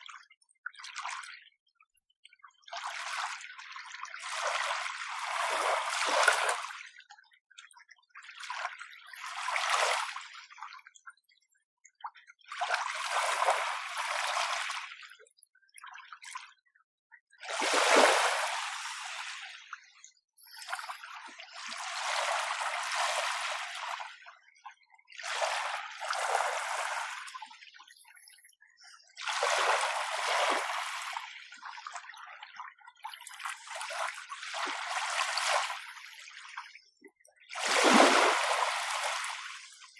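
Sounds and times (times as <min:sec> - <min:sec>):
gentle sea waves washing on shore: 0:04.4 - 0:06.8, 0:12.9 - 0:14.8, 0:17.4 - 0:19.8, 0:20.7 - 0:24.2, 0:25.2 - 0:27.5, 0:29.3 - 0:31.3, 0:37.5 - 0:39.9.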